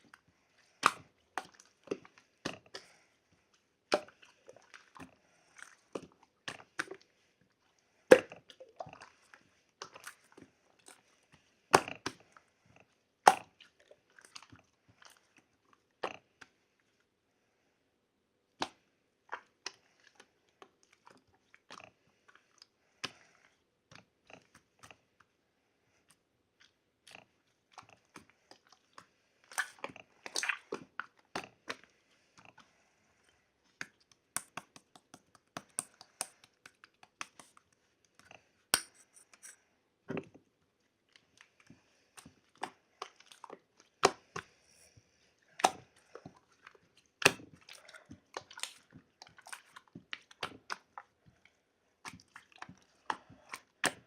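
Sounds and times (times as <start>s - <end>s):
person chewing crunchy food: 26.1s - 39.6s, 41.1s - 54.0s.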